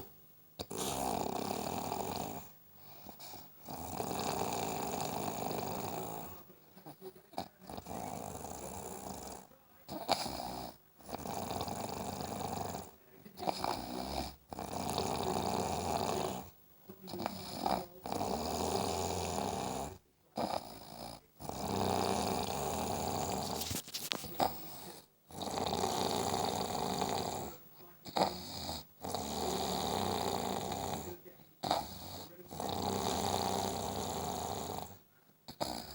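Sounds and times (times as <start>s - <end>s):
person snoring: 0.0s - 35.9s
breathing: 2.8s - 3.6s, 23.4s - 25.1s.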